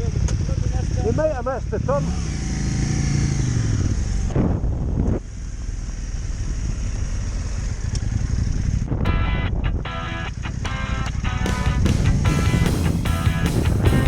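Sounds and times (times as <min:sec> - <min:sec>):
motorcycle engine: 0:00.0 - 0:14.0
wind rumble: 0:02.6 - 0:14.0
music: 0:09.1 - 0:14.0.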